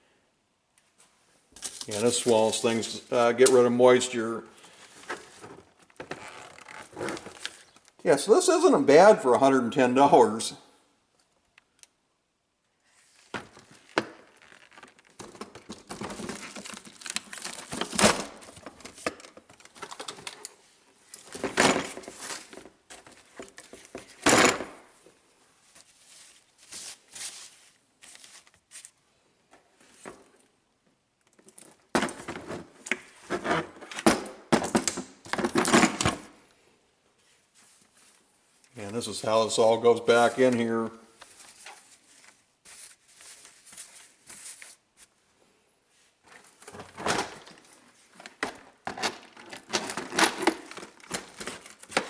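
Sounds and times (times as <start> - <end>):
plastic crinkling and rustling: 1.6 - 3.8, 4.6 - 8.0, 12.9 - 24.2, 25.6 - 29.0, 37.2 - 45.2, 46.2 - 52.0.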